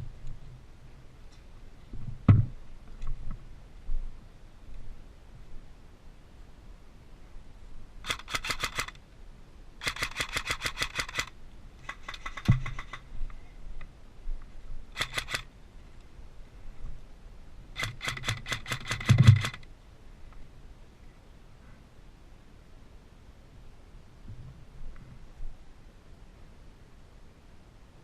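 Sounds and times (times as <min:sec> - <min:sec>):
airsoft guns firing full auto: 0:08.0 - 0:09.0, 0:09.8 - 0:13.0, 0:15.0 - 0:15.5, 0:17.8 - 0:19.6.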